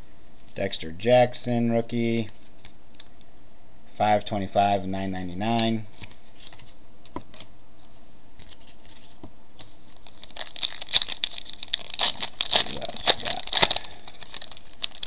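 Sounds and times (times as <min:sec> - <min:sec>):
foil wrapper tearing and crinkling: 0:10.0 - 0:15.0.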